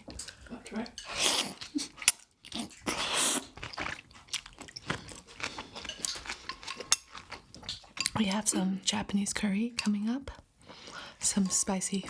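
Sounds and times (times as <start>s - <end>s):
wet chewing and mouth sounds: 0.0s - 8.8s.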